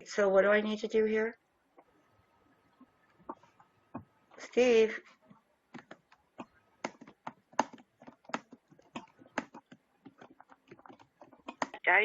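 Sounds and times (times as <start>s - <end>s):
computer keyboard typing: 5.7s - 11.9s.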